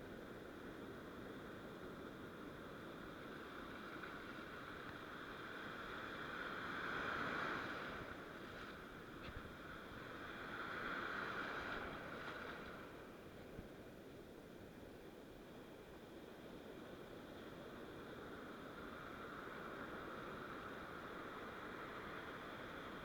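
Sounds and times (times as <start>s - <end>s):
sea surf washing in: 3.4s - 13.5s.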